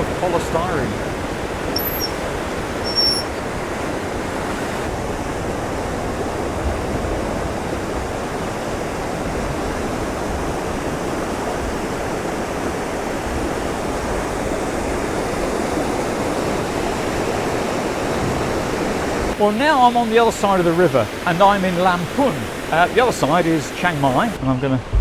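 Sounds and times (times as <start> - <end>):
flood water rushing: 0.0 - 25.0.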